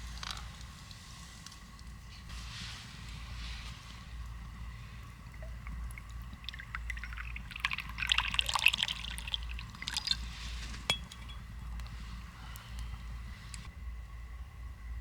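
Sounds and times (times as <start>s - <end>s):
liquid pouring and splashing: 2.5s - 13.7s.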